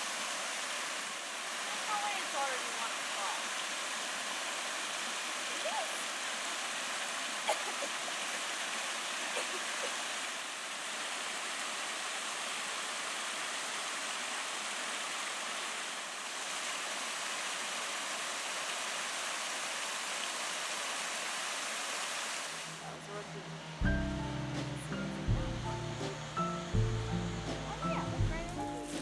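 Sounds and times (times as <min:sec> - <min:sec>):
waterfall rushing: 0:00.0 - 0:23.0.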